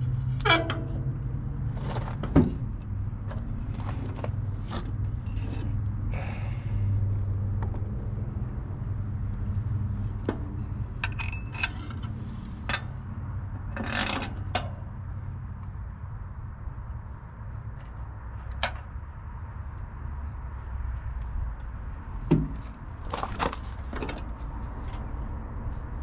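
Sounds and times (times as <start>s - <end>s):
steady low hum: 0.0s - 26.0s
metal parts rattling: 11.0s - 12.9s.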